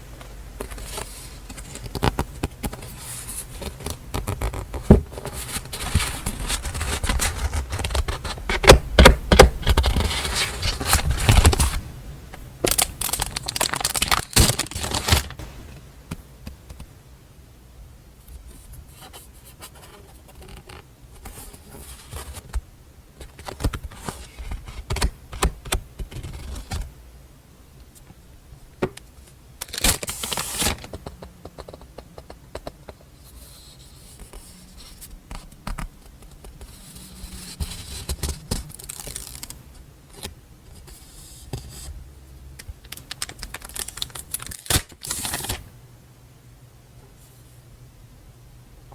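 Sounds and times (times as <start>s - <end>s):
paper and packaging rustling: 0.6s - 8.8s, 9.6s - 11.8s, 12.6s - 15.7s, 29.6s - 31.7s, 36.9s - 39.6s, 42.8s - 45.7s.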